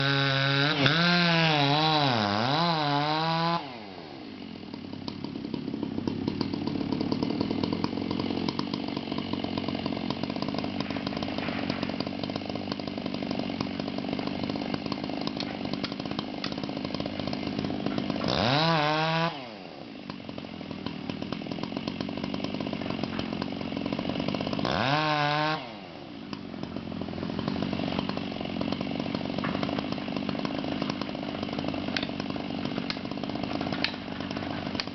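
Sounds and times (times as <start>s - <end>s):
chainsaw cutting and revving: 0.0s - 34.9s.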